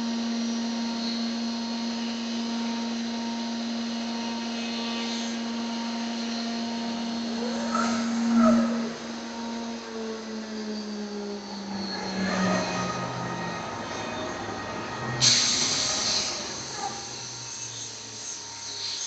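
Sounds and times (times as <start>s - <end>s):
cnc router spindle whine: 0.0s - 19.0s
machine axes pitched sweep: 5.9s - 19.0s.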